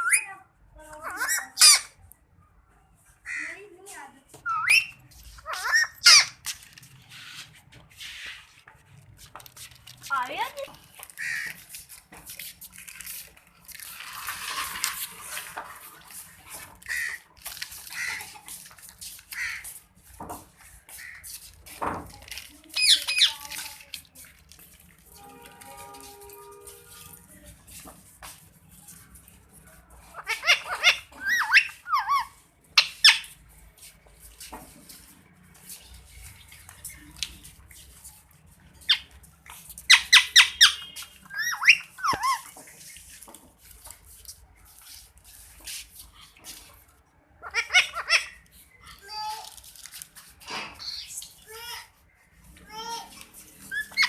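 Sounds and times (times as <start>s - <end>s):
parrot squawks and chirps: 0.0s - 0.4s, 1.0s - 2.0s, 3.2s - 3.6s, 4.4s - 6.5s, 11.2s - 11.6s, 16.8s - 18.4s, 19.3s - 19.8s, 22.7s - 23.5s, 30.0s - 33.4s, 38.8s - 39.2s, 39.8s - 42.9s, 47.4s - 49.0s, 50.8s - 51.2s, 53.6s - 54.0s.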